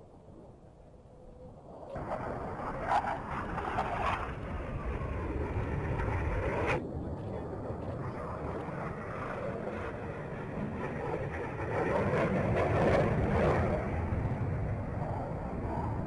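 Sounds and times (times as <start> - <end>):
jet engines rumbling: 0.0 - 16.0.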